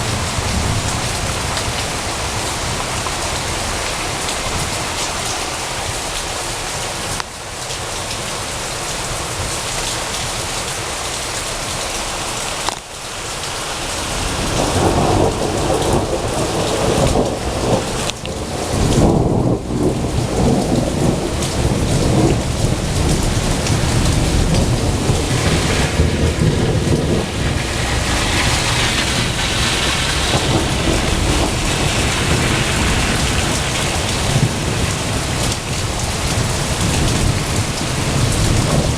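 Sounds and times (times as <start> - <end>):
thunder rolling: 0.0 - 5.8, 14.0 - 38.9
heavy rain: 0.0 - 38.9.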